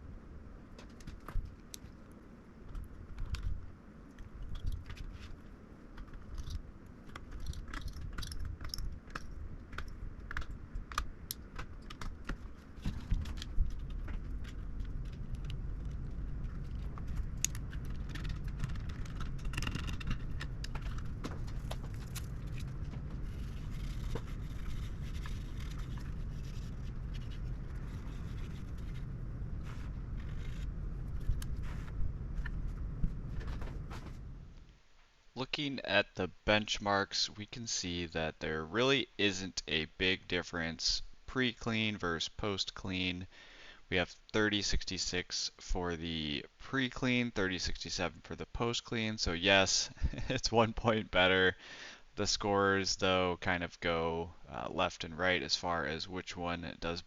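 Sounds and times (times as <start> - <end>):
low steady rumble: 0.0 - 43.3.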